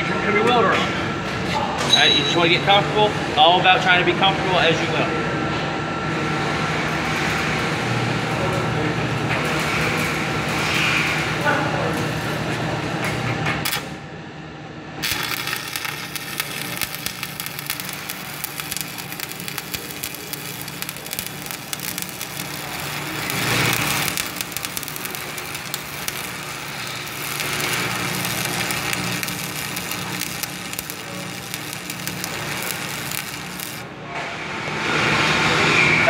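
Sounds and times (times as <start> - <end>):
welding arc crackling hiss: 15.0 - 33.9.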